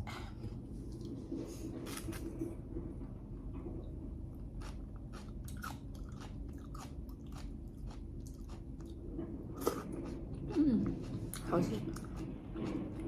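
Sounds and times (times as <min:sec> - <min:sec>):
person chewing crunchy food: 0:04.4 - 0:13.0.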